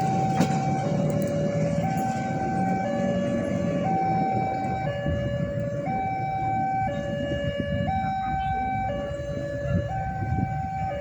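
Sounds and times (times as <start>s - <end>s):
two-tone hi-lo siren: 0.0s - 11.0s.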